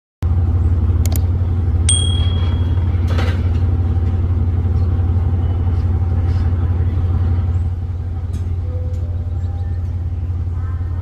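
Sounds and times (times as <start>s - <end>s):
locomotive idling rumble: 0.2s - 11.0s
sharp metallic clicks: 1.0s - 1.3s
ringing metal ping: 1.9s - 3.4s.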